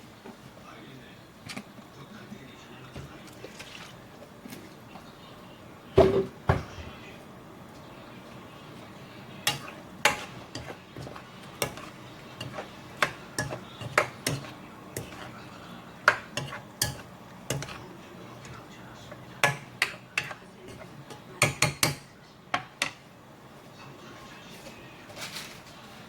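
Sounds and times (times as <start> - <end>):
utensils clinking against pot and dishes: 2.9 - 4.7, 9.4 - 23.0.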